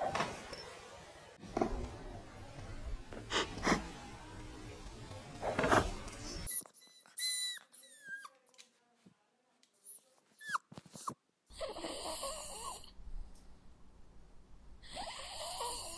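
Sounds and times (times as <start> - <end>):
puppy whimpering: 6.5 - 8.4, 9.9 - 12.8.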